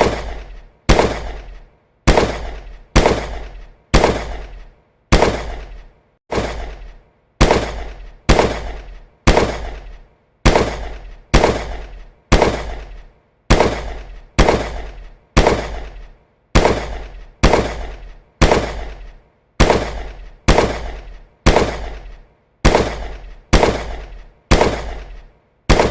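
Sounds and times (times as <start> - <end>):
gunshots with deep boom: 0.0 - 25.9.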